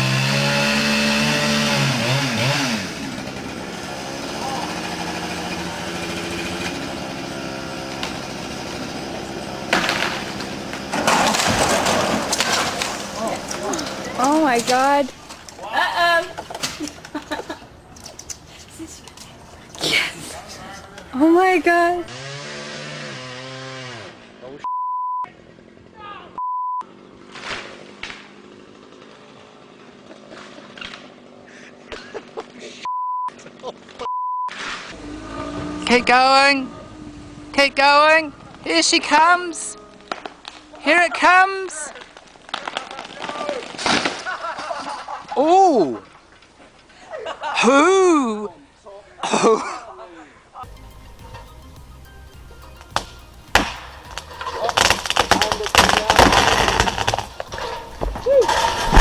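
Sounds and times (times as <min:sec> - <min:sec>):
small engine running: 0:00.0 - 0:11.5, 0:21.9 - 0:24.4, 0:53.0 - 0:59.0
wood cracking: 0:00.0 - 0:20.1, 0:38.4 - 0:45.4, 0:52.3 - 0:59.0
faint outdoor background: 0:00.0 - 0:59.0
tree crashing down with thud: 0:09.6 - 0:15.6, 0:42.0 - 0:44.8, 0:52.9 - 0:59.0
censor bleeps: 0:24.6 - 0:25.3, 0:26.4 - 0:26.9, 0:32.9 - 0:33.4, 0:34.0 - 0:34.5.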